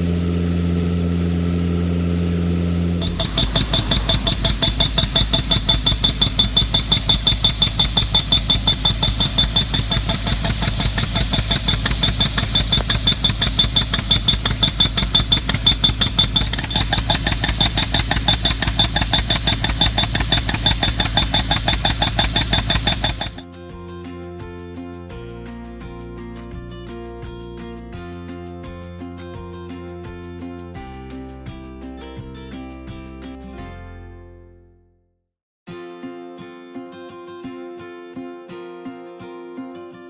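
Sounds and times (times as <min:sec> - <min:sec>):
engine noise: 0:00.0 - 0:23.4
pneumatic mole hammering: 0:02.9 - 0:23.4.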